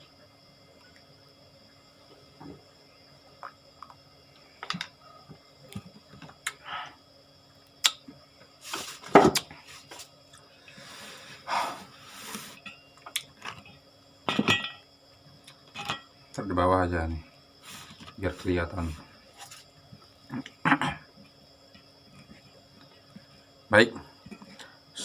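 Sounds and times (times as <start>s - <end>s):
scraping or rustling: 8.6s - 10.1s
dishes clicking and knocking: 14.3s - 14.8s.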